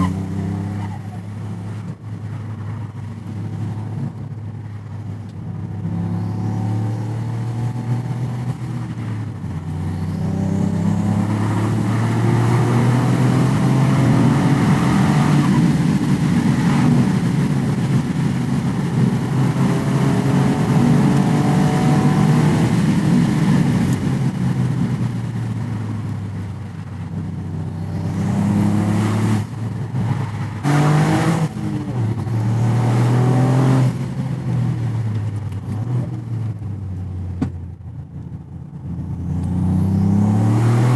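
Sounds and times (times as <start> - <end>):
car engine accelerating: 5.6 - 25.6, 27.6 - 37.4, 38.2 - 40.9.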